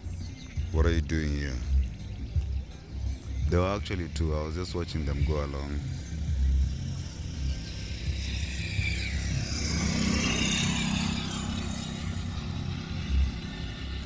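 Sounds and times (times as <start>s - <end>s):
motor vehicle passing by: 4.4s - 14.0s.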